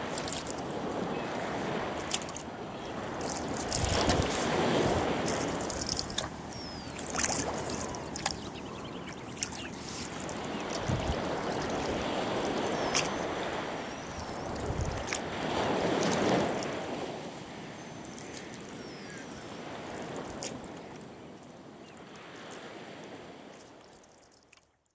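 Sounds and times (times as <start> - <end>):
oars splashing through water: 0.0 - 21.1
birds chirping: 0.8 - 15.1, 17.5 - 20.1.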